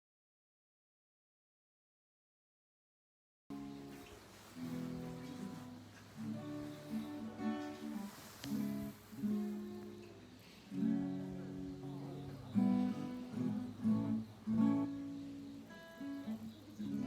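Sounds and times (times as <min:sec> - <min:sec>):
acoustic guitar strumming chords: 0:03.5 - 0:17.0.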